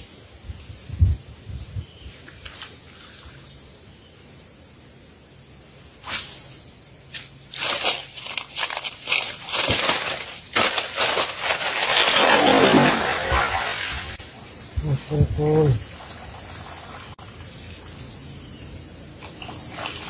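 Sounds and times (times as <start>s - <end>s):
water splashing: 10.7s - 14.2s, 19.2s - 20.0s.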